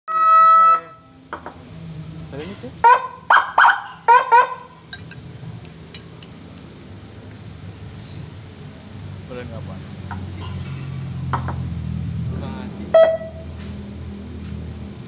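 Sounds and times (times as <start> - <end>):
siren horn blast: 0.1 - 1.2, 12.9 - 13.5.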